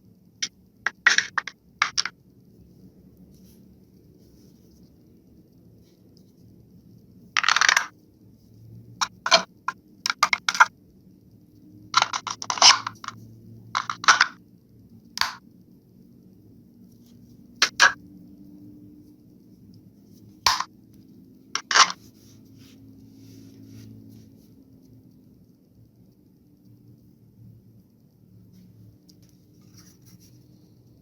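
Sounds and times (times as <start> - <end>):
small parts handled by hand: 0.9 - 2.2, 7.3 - 8.0, 9.0 - 10.7, 12.0 - 13.2, 13.8 - 14.4, 15.2 - 15.4, 17.6 - 18.0, 20.5 - 20.7, 21.6 - 22.8.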